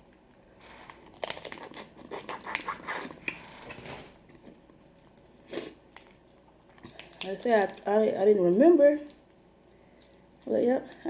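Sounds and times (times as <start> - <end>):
wet smacking and sucking clicks: 0.8 - 4.7.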